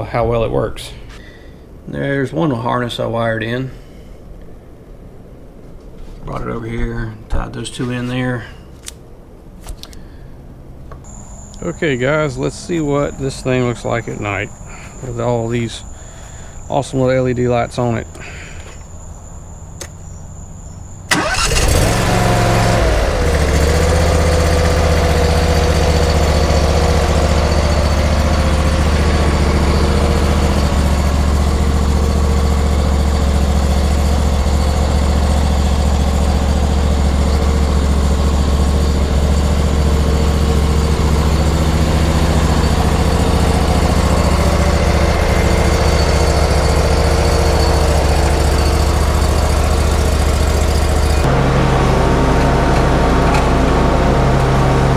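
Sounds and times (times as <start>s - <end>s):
mower engine running: 21.1s - 54.9s.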